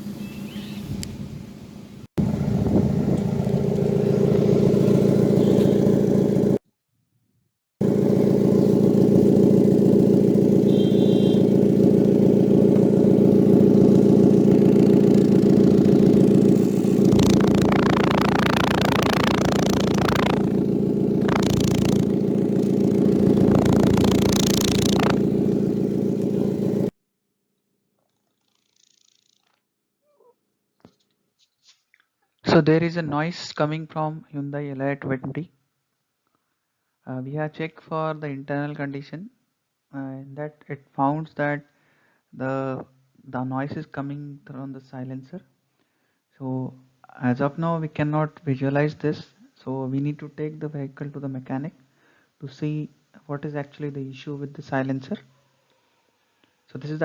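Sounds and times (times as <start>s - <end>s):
car exhaust droning: 2.2s - 6.6s, 7.8s - 26.9s
exhaust hiss: 12.7s - 26.9s.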